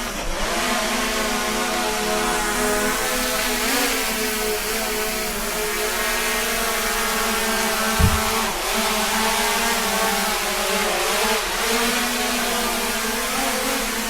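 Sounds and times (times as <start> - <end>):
low thump: 8.0 - 8.5.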